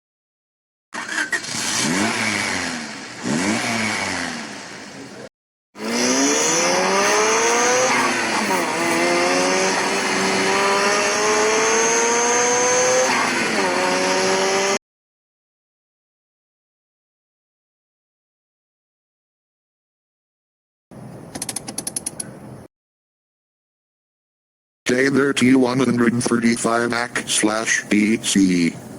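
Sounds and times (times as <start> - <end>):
car engine revving: 1.0 - 14.8.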